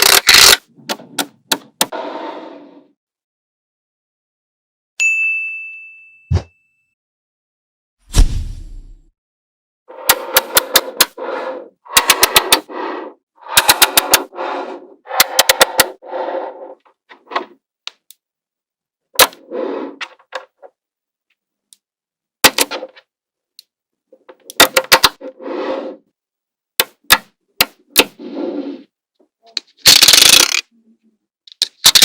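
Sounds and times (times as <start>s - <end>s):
magnetic balls clicking together: 29.8s - 30.6s.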